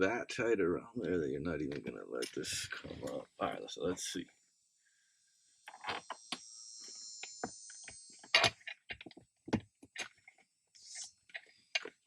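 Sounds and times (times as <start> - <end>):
faint high hiss: 0.0 - 4.2.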